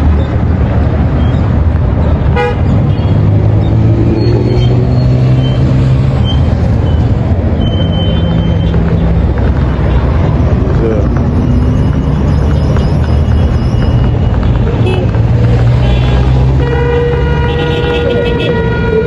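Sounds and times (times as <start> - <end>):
road traffic rumble: 0.0 - 19.0
car horn toot: 2.3 - 2.8, 15.7 - 19.0.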